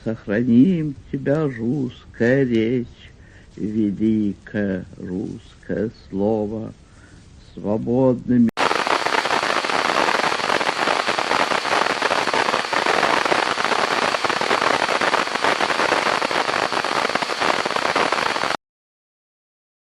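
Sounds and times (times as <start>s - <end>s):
dense steady crackling: 8.6s - 18.6s.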